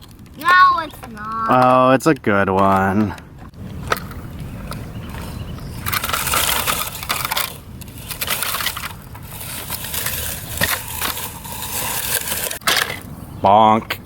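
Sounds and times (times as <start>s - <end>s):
toy loader scraping through dirt: 5.2s - 13.0s.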